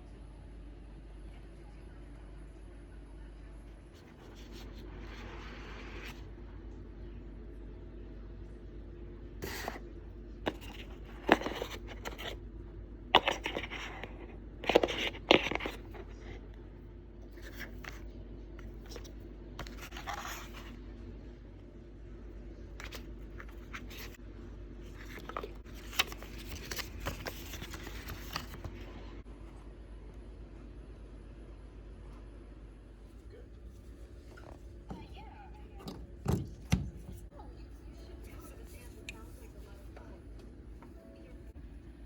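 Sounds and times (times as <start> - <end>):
cardboard scraping and rustling: 17.4 - 20.8, 24.8 - 28.9.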